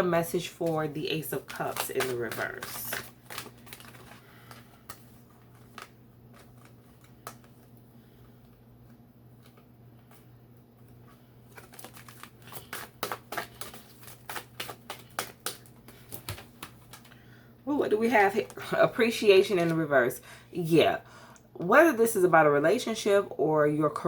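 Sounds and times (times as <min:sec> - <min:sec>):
cards being shuffled: 0:00.2 - 0:07.7, 0:09.4 - 0:17.2.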